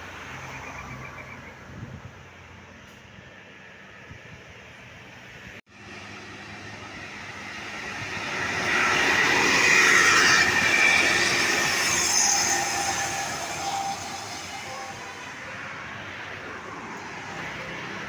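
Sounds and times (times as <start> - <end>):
heavy vehicle passing: 5.2 - 18.0.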